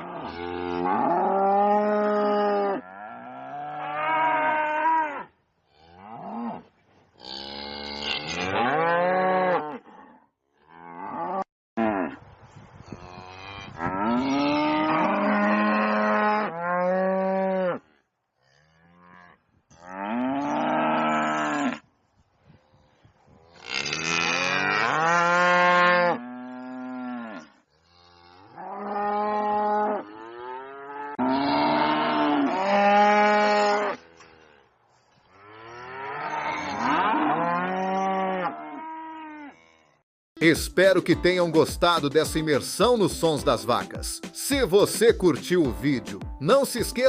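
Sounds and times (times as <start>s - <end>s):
cattle mooing: 0.0s - 6.6s, 7.2s - 12.1s, 13.1s - 21.8s, 23.6s - 34.7s, 35.4s - 40.0s.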